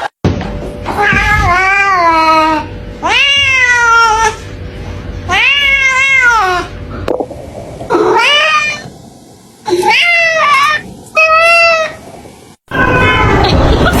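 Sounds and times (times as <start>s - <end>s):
cat meowing: 1.0s - 4.4s, 5.3s - 6.7s.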